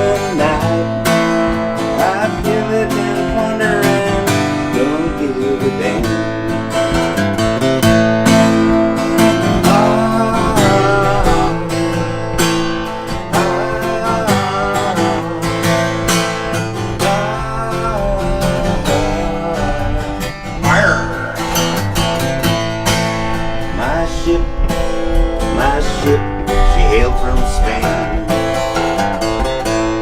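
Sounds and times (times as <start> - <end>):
strummed acoustic guitar: 0.0 - 30.0
lead melody line: 16.5 - 29.9.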